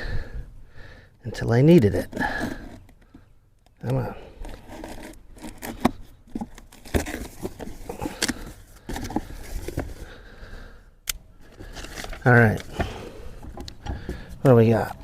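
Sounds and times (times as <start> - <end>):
packaging tearing and crinkling: 4.5 - 8.5
sharp clicks: 11.0 - 11.2.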